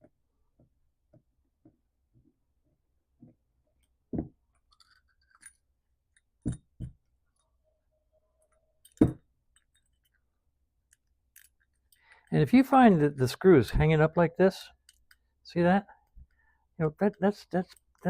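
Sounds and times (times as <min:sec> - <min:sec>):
tools knocking and clinking: 0:03.3 - 0:07.1, 0:08.4 - 0:10.2.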